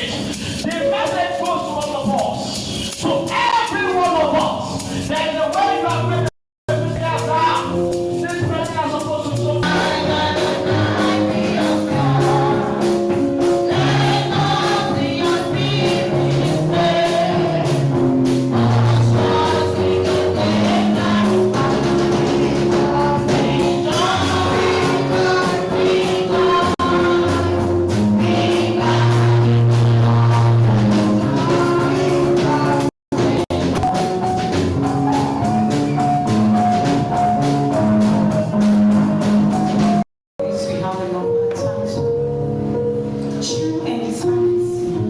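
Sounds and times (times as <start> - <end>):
instrumental backing: 0.0 - 45.0
choir singing gospel: 9.2 - 34.2.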